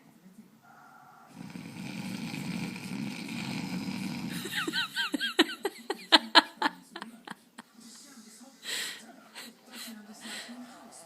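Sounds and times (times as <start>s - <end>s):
man snoring: 1.3s - 5.0s.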